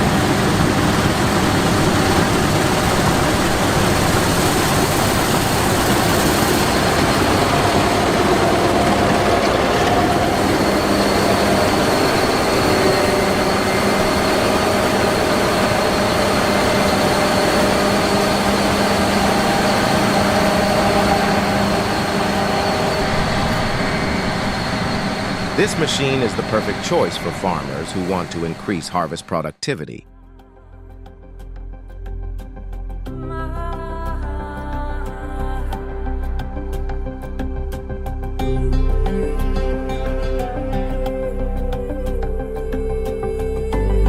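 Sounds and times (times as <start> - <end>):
combine harvester engine running: 0.0 - 29.3
thin high whine: 2.2 - 29.4.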